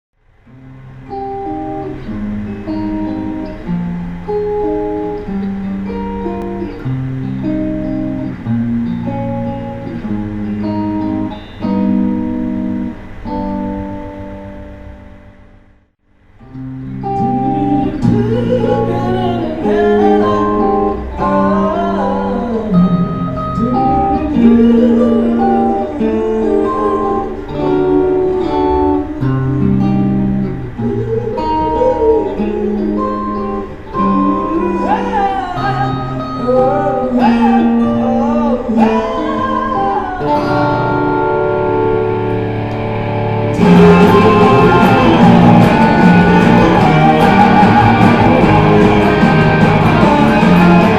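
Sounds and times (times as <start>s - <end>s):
guitar: 0.1s - 50.9s
person singing: 17.0s - 41.6s, 43.5s - 50.9s
full band playing: 42.7s - 50.9s.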